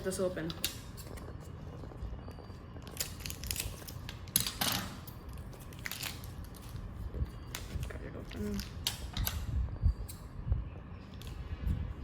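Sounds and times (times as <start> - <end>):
packaging crinkling: 0.9 - 4.6, 5.3 - 6.9.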